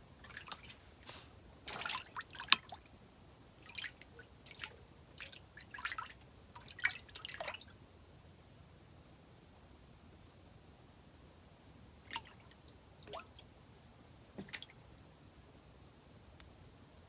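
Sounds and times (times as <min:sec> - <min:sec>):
water drips and splashes: 0:00.2 - 0:00.8, 0:01.7 - 0:02.9, 0:03.6 - 0:07.7, 0:12.1 - 0:13.4, 0:14.4 - 0:14.9.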